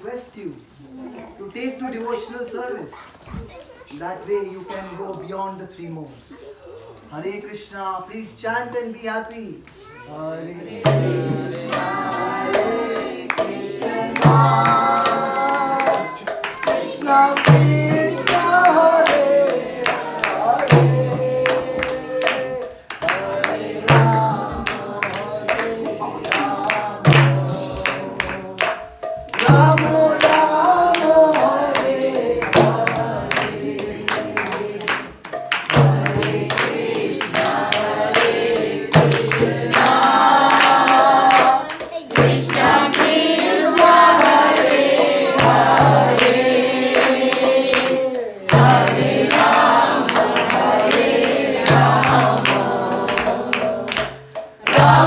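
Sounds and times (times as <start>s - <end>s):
group singing: 10.1s - 55.0s
sharp percussive strikes: 10.8s - 55.0s
low drum beat: 23.1s - 38.2s.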